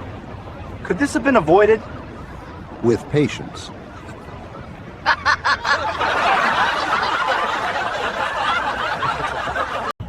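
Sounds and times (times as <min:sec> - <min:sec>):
crowd laughing: 0:01.8 - 0:10.0.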